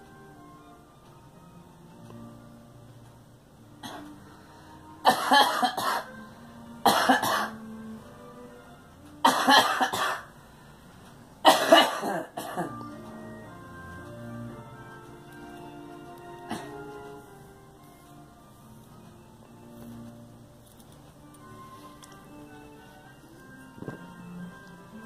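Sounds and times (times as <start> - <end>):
background music: 0.0 - 25.0
girl coughing: 5.1 - 6.1, 6.9 - 7.6, 9.3 - 10.3, 11.5 - 12.7, 16.5 - 16.8.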